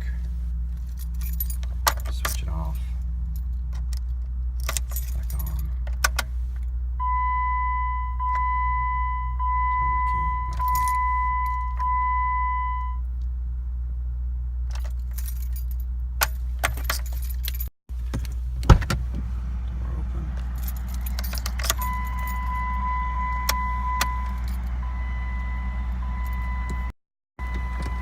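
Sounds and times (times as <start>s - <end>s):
low cabin hum: 0.0s - 28.0s
keys jangling: 0.7s - 2.5s, 3.4s - 6.3s, 10.5s - 11.8s, 14.7s - 18.4s, 20.4s - 22.5s
ignition click: 7.0s - 13.0s, 21.1s - 24.6s, 26.2s - 28.0s
dashboard warning tone: 7.0s - 13.1s, 20.6s - 28.0s.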